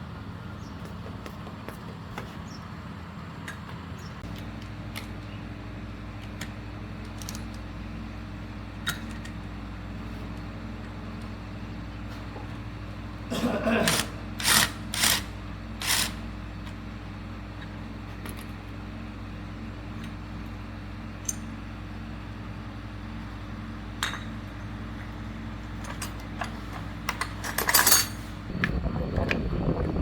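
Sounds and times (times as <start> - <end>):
steady low hum: 0.0 - 30.0
small metal parts clinking: 25.8 - 28.3.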